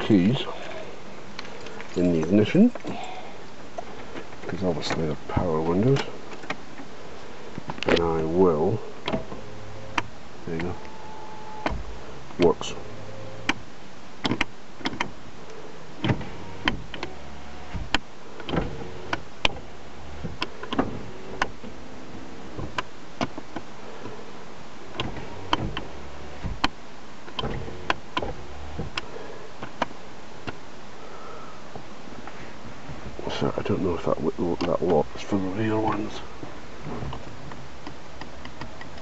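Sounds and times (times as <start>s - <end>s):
power window motor running: 8.3s - 30.6s.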